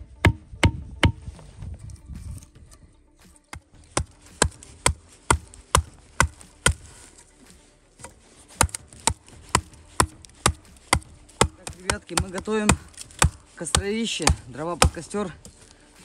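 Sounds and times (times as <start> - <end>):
axe chopping wood: 0.2 - 1.3, 3.5 - 7.1, 8.0 - 15.6.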